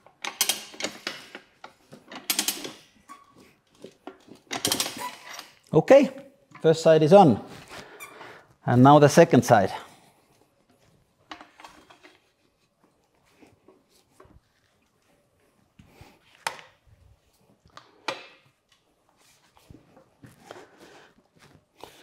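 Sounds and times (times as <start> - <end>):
faint knocks and clacks of tools: 0.0 - 5.7, 10.2 - 17.0.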